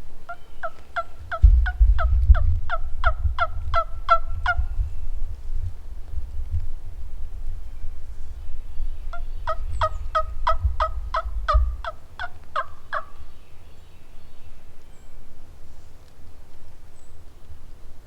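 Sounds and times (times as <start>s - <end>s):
wind rumbling on microphone: 0.0s - 18.0s
turkey yelping: 2.7s - 4.6s, 9.1s - 13.2s.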